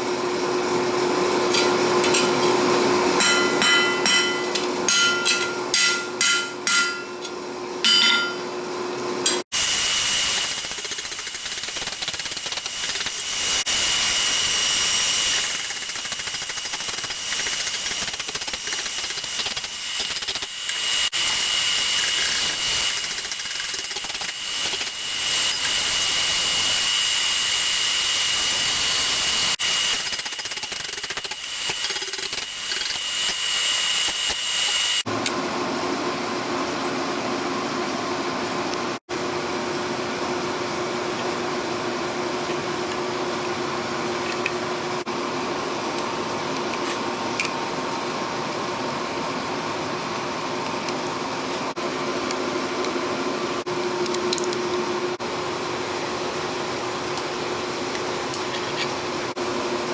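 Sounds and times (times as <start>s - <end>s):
power tool whining: 9.5s - 35.1s.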